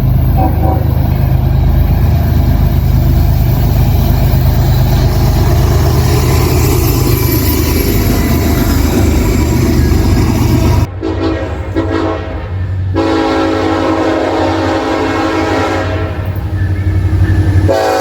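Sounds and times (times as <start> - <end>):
locomotive engine rumbling: 0.0 - 18.0.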